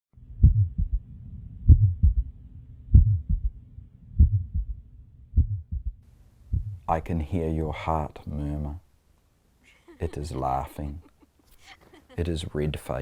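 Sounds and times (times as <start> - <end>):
low steady hum: 0.2 - 13.0
heartbeat thumps: 0.4 - 2.3, 2.9 - 7.0.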